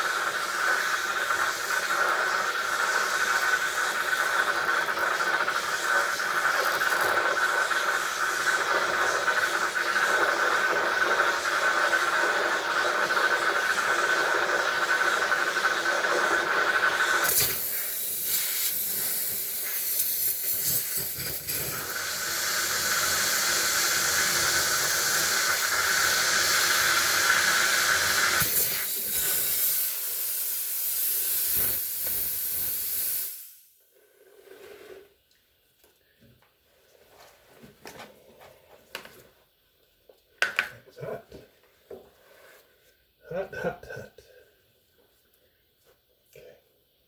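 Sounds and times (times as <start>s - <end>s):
heat gun blowing hot air: 0.0s - 33.7s.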